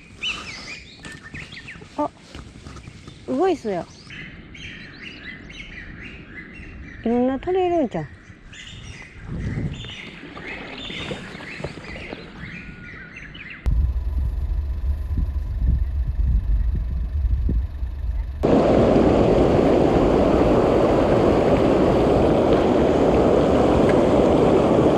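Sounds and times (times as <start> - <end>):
small birds chirping: 0.0 - 13.7
wind rumble on microphone: 0.8 - 24.9
stream rushing over rocks: 18.4 - 24.9.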